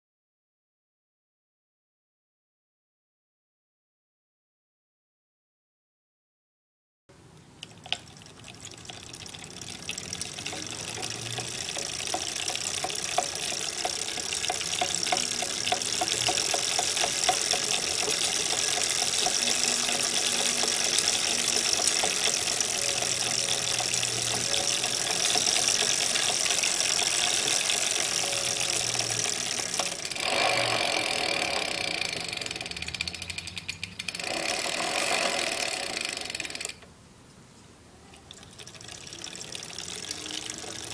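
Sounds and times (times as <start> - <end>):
fast light ticks: 7.6 - 36.9
electric bike rushing noise: 8.9 - 36.8.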